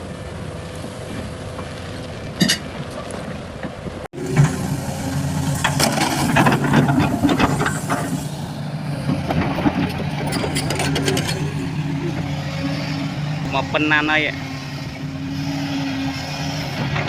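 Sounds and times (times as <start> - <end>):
heavy machine engine running: 4.2 - 17.0.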